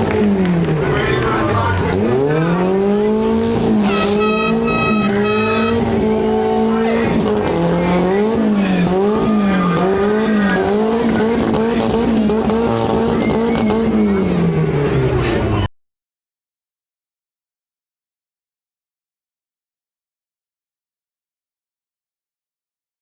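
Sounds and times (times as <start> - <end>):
car engines revving: 0.0 - 15.7
high-pitched horn blasts: 3.8 - 5.9.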